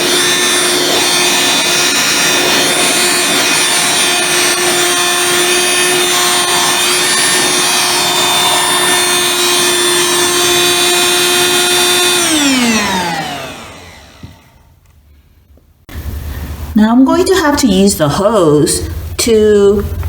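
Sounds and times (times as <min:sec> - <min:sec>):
handheld vacuum cleaner whine: 0:00.0 - 0:15.1.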